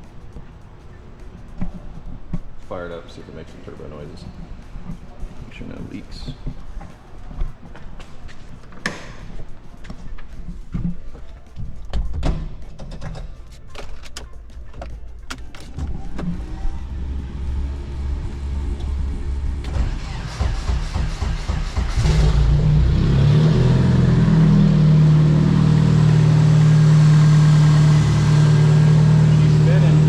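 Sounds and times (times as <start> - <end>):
engine idling: 16.2 - 30.0
engine starting: 19.6 - 22.6.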